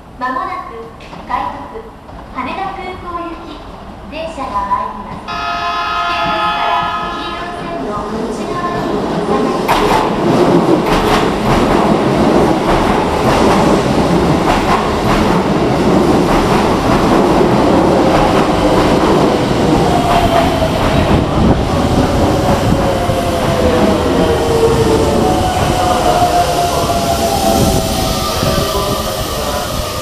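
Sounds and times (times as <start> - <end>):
electric train pulling in: 12.2 - 30.0.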